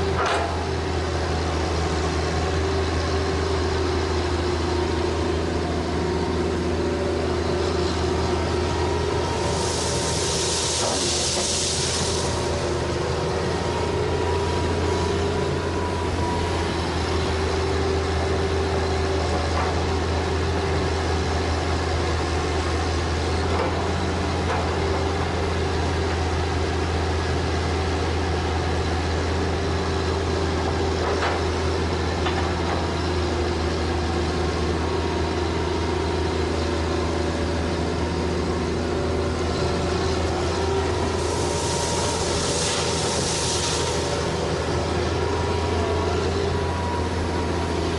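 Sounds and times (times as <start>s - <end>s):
excavator diesel engine running: 0.0s - 47.9s
brief hiss: 9.5s - 12.6s, 41.2s - 44.4s.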